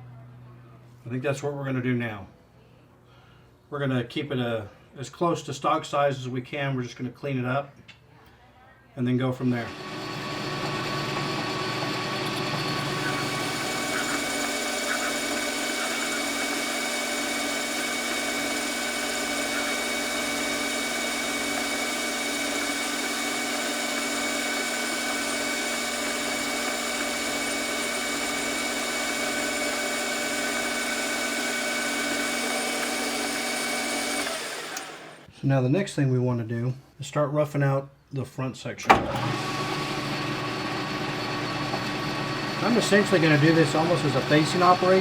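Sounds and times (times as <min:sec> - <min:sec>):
metal lathe whining: 0:09.6 - 0:35.3, 0:38.9 - 0:45.0.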